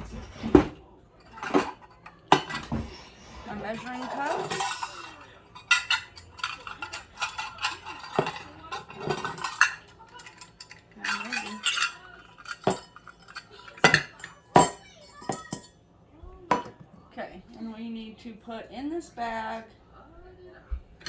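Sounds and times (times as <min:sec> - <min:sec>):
scraping and rustling: 0:00.0 - 0:13.8
dishes and utensils clinking: 0:00.0 - 0:15.8, 0:16.5 - 0:17.0.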